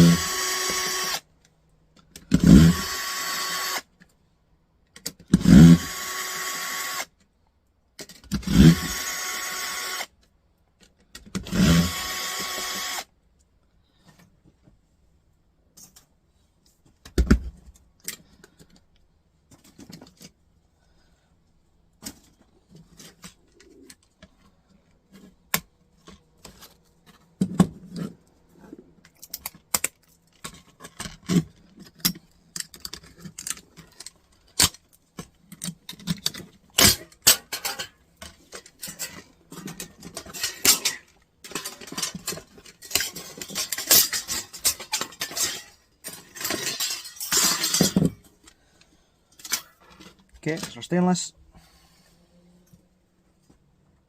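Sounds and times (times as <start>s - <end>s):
tools clicking and clinking on metal: 29.0s - 48.6s, 49.3s - 50.9s.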